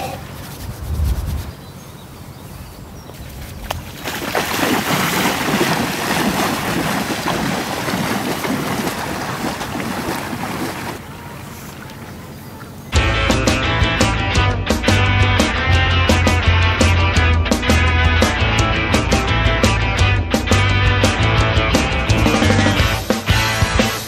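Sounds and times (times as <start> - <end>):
wind on microphone: 0.0 - 1.8
water splashing at shoreline: 3.2 - 12.9.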